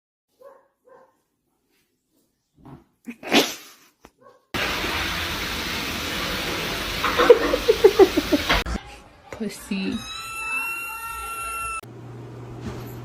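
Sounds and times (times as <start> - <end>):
cat crying: 9.8 - 11.8
short pitched calls: 9.8 - 11.8.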